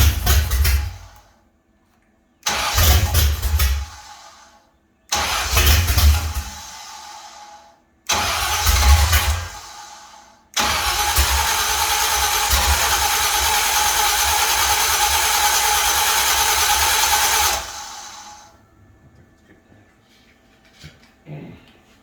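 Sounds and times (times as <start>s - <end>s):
engine starting and stalling: 0.0s - 1.2s, 2.4s - 18.5s.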